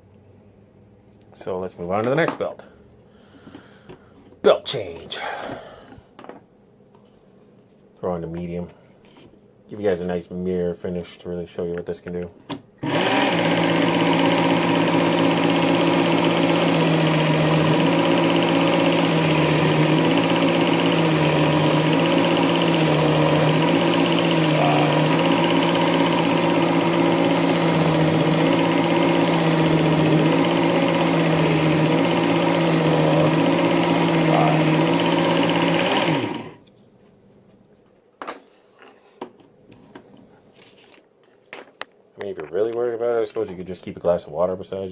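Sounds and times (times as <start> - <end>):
belt sharpener motor humming: 12.8 - 36.7.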